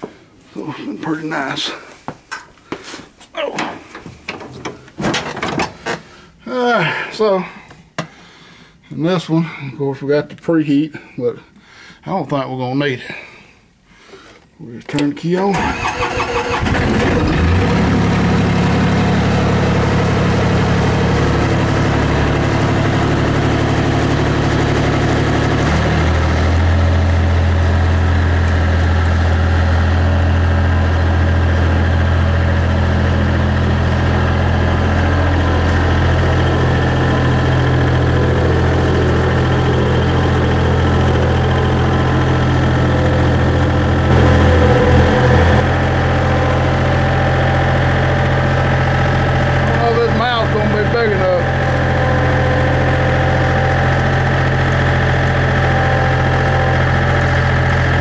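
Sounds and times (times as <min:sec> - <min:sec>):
diesel engine idling: 0:15.6 - 0:58.0.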